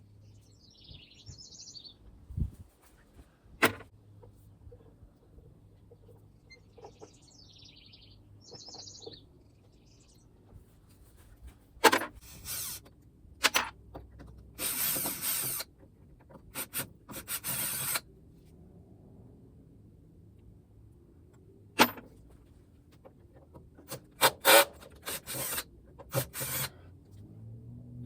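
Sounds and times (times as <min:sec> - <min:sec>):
bird chirping: 0:00.0 - 0:02.1, 0:05.3 - 0:10.4.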